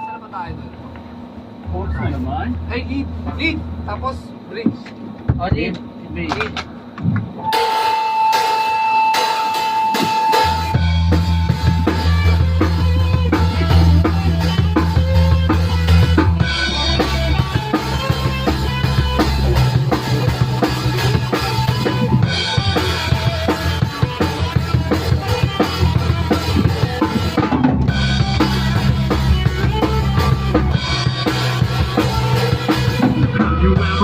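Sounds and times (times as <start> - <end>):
sustained bass notes: 0.0 - 5.1, 10.3 - 34.0
rock band playing: 1.1 - 4.8, 6.3 - 34.0
drum kit kick and snare: 7.0 - 34.0.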